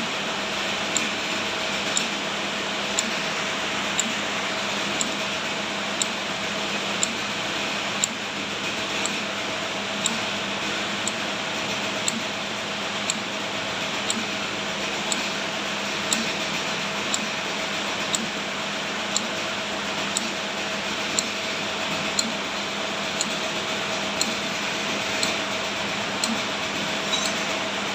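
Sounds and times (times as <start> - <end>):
regular sharp clicks: 3.0 - 3.2, 4.0 - 4.2, 5.0 - 5.2, 10.0 - 10.2, 12.0 - 12.3, 16.1 - 16.3, 22.2 - 22.4, 24.2 - 24.4.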